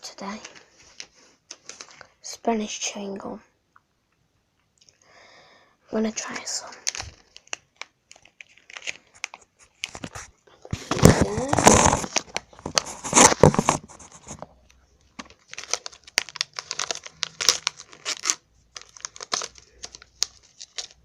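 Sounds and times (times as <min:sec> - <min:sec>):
wrapper crinkling: 0:00.0 - 0:02.3, 0:06.1 - 0:14.5, 0:15.1 - 0:21.0
gum packet tearing: 0:06.7 - 0:14.5, 0:15.2 - 0:21.0.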